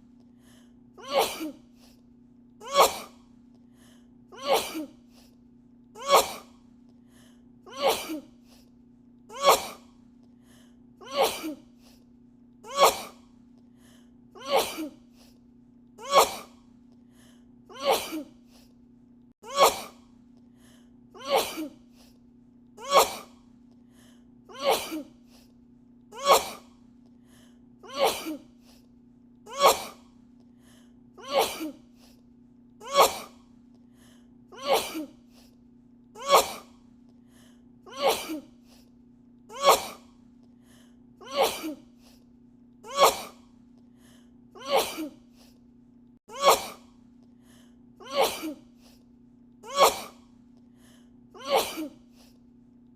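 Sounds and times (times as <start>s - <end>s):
steady low hum: 0.0s - 52.9s
woman sneezing: 2.6s - 3.2s, 6.0s - 6.6s, 9.4s - 9.8s, 19.5s - 20.0s, 22.8s - 23.3s, 26.2s - 26.7s, 29.5s - 30.0s, 32.9s - 33.4s, 36.2s - 36.8s, 38.0s - 38.5s, 39.6s - 40.0s, 42.9s - 43.4s, 44.6s - 45.2s, 46.3s - 46.9s, 48.0s - 48.6s, 49.7s - 50.2s, 51.4s - 52.0s.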